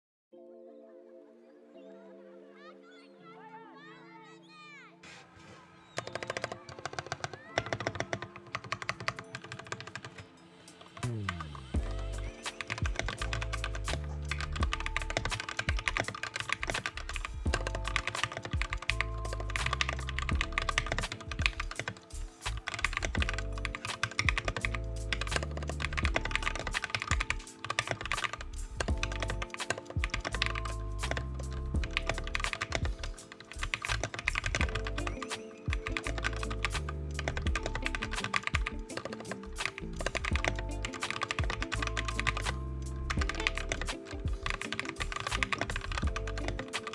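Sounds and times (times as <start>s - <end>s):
typing on mechanical keyboard: 6.0s - 10.2s, 12.4s - 46.9s
background music with bass line: 11.0s - 46.9s.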